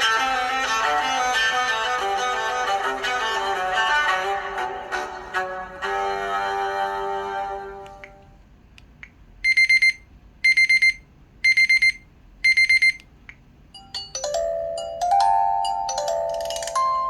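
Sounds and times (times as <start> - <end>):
phone alarm beeping: 9.4 - 13.0
chiming ringtone melody: 13.8 - 17.0.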